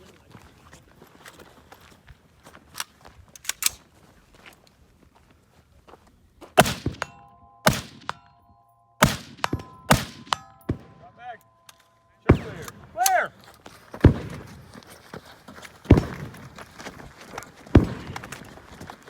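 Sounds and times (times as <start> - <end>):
gunshots: 6.6 - 8.3, 9.0 - 11.2, 12.3 - 13.3, 14.0 - 14.7, 15.9 - 16.5, 17.7 - 18.5
steel targets ringing: 7.0 - 13.4.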